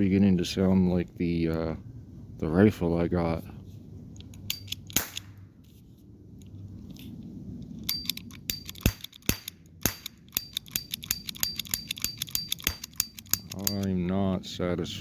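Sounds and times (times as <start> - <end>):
metallic clicks with ring: 4.2 - 5.3, 7.8 - 13.9
cap gun snaps: 4.5 - 5.4, 8.0 - 13.8.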